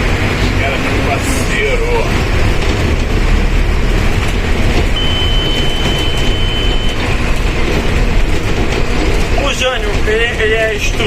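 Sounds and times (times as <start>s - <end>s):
bus diesel engine rumble: 0.0s - 11.0s.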